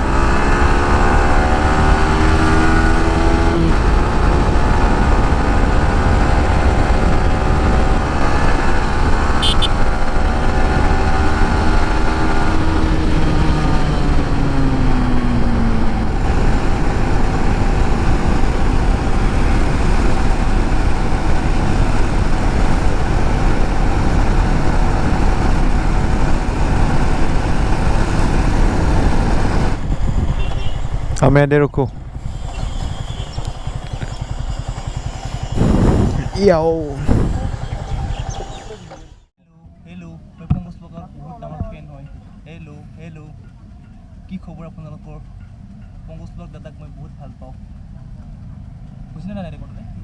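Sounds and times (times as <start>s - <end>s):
motorcycle engine slowing: 0.0s - 39.3s, 43.3s - 50.0s
rushing noise: 25.7s - 39.3s.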